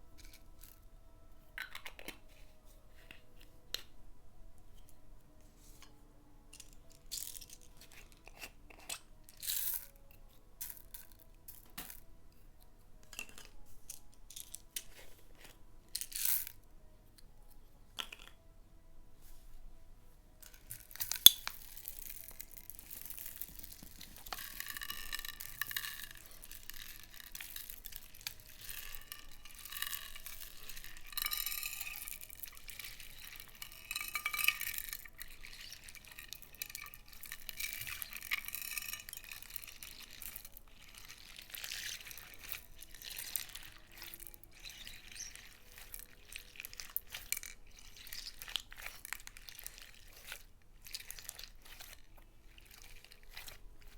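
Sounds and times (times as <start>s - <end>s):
slime squelching and crackling: 22.2s - 53.9s.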